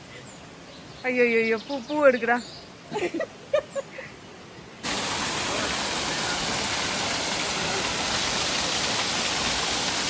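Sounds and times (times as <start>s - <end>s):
waterfall rushing: 4.8s - 10.0s.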